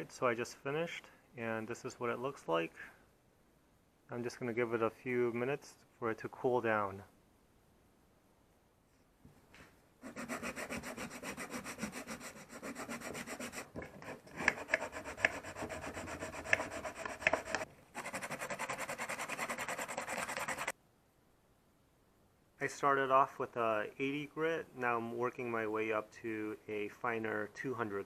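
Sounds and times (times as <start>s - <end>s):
sandpaper rubbing on plastic: 10.0s - 20.7s.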